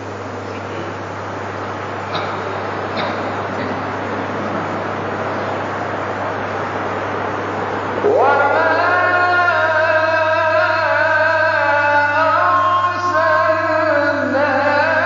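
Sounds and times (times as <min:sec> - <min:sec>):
rush of noise: 0:01.0 - 0:14.2
man chanting: 0:08.0 - 0:15.0.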